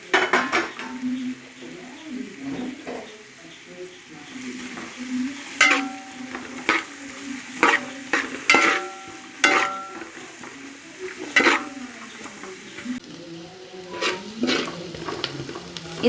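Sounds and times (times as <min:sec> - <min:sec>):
onions frying in oil: 0:00.0 - 0:16.0
spoon knocking metal pan: 0:05.6 - 0:12.9, 0:13.9 - 0:15.6.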